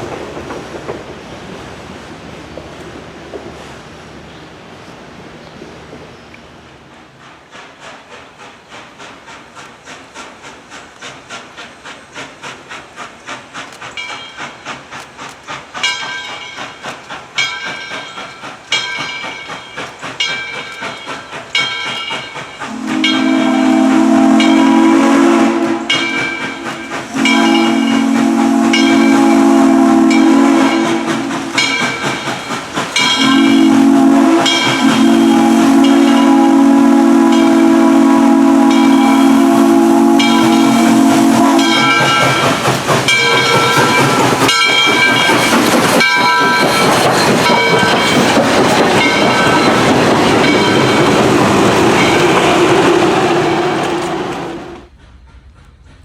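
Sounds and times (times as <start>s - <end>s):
steam locomotive exhaust chuffs: 6.7s - 56.0s
locomotive bell ringing: 15.8s - 23.8s, 24.4s - 24.9s, 25.8s - 36.6s, 37.2s - 37.8s, 38.4s - 52.6s
steam whistle: 22.7s - 31.9s, 33.0s - 45.3s.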